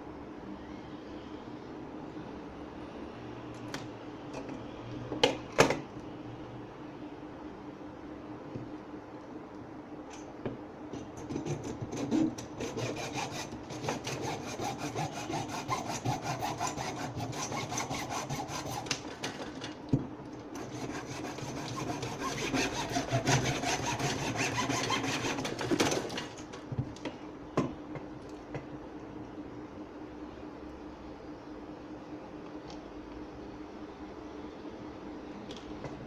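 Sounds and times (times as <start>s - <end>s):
saw rasping: 11.3s - 19.0s, 20.6s - 26.0s.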